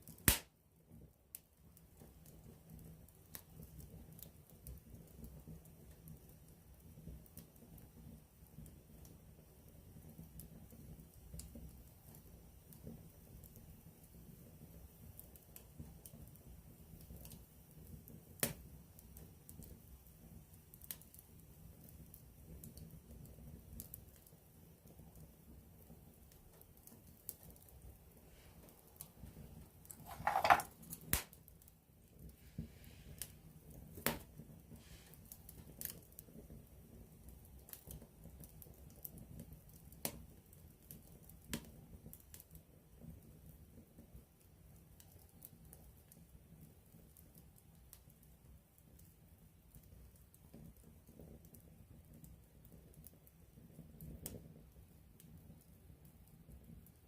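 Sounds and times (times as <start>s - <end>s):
campfire crackling: 0.0s - 57.0s
sharp pop from fire: 0.1s - 0.6s, 29.9s - 31.4s, 34.0s - 34.3s
low rush of flames: 32.1s - 38.5s.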